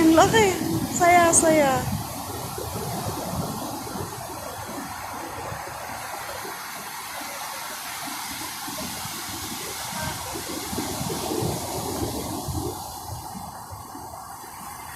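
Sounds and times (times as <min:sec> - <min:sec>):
low surf rumbles: 0:00.0 - 0:04.8
sea waves breaking: 0:00.0 - 0:14.9.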